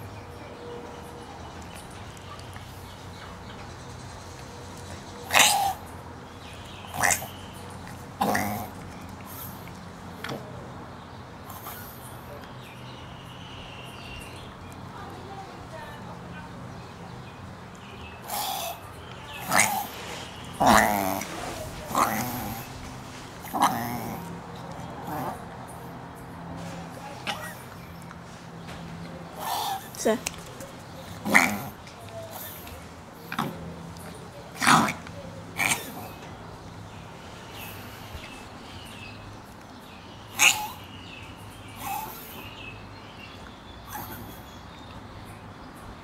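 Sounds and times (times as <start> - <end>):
dog reverse-sneezing: 5.2 - 5.9, 18.2 - 24.4, 40.3 - 40.9.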